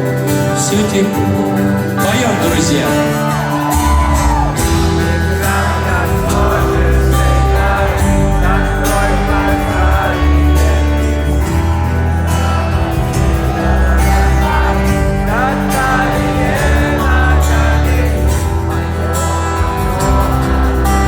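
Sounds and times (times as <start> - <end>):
heavy steady bass: 0.0 - 21.0
rock band playing: 0.0 - 21.0.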